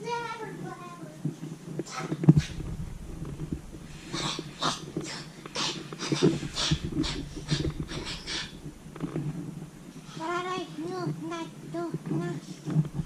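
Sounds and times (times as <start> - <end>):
quick noisy panting: 3.9 - 8.6.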